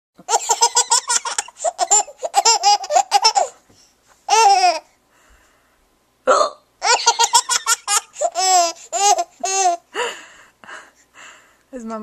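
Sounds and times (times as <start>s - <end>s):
baby laughing: 0.2s - 3.6s, 4.3s - 4.9s, 6.8s - 9.9s.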